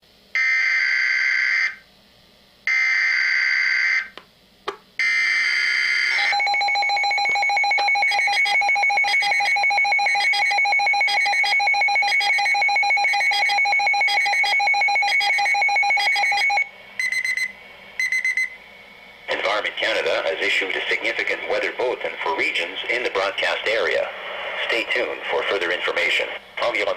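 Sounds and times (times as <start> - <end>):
rapidly pulsing alert tone: 6.0 - 18.5.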